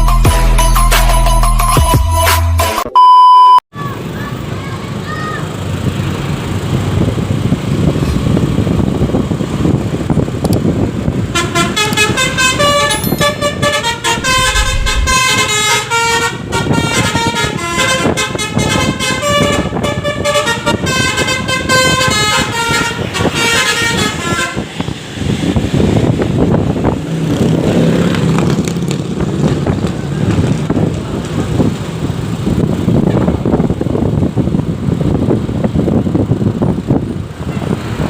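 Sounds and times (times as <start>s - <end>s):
bus engine rumble: 3.8s - 38.0s
road noise: 3.8s - 38.0s
multi-tone musical bus horn: 11.2s - 24.9s.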